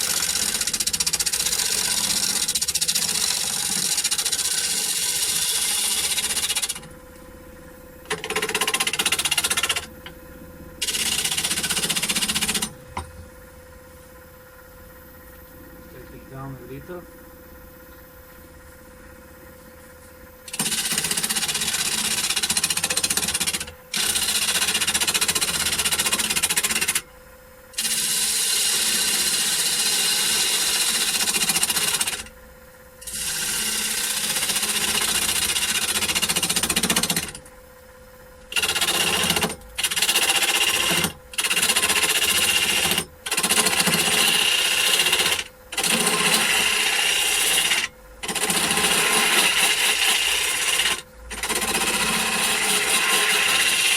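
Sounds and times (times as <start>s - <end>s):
gouge cutting spinning wood: 0.0s - 6.9s, 8.1s - 10.0s, 10.8s - 12.8s, 20.5s - 27.0s, 27.8s - 32.3s, 33.0s - 37.4s, 38.5s - 53.9s
lathe humming: 0.0s - 13.3s, 20.5s - 27.0s, 27.8s - 32.3s, 33.0s - 37.4s, 38.4s - 53.9s.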